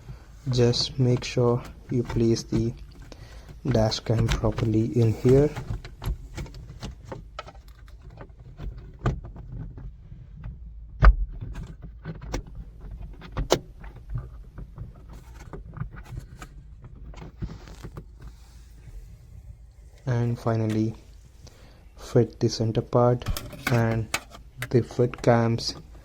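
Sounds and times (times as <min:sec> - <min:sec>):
plastic clicks and knocks: 0:00.7 - 0:18.2, 0:23.2 - 0:26.0.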